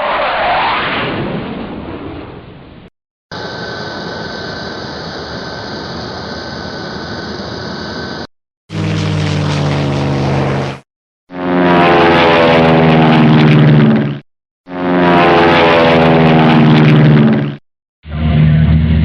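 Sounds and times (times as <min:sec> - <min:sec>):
propeller airplane engine running: 0:03.3 - 0:19.0.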